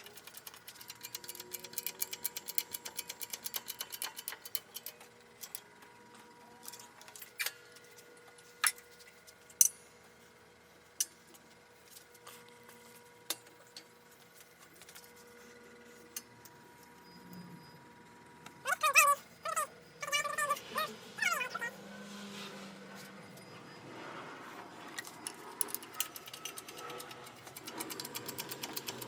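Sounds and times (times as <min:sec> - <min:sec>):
ratchet wrench clicking: 0:00.0 - 0:05.6, 0:25.3 - 0:29.0.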